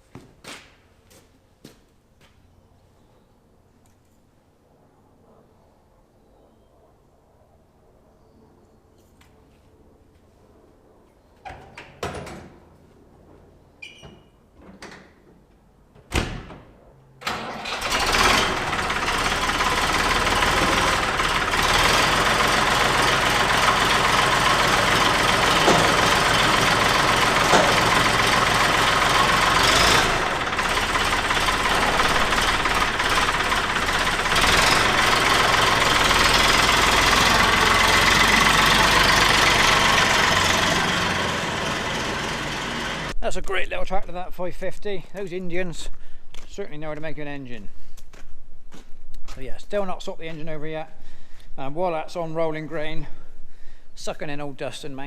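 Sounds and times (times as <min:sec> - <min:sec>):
tractor engine starting and running: 0:17.2 - 0:43.2.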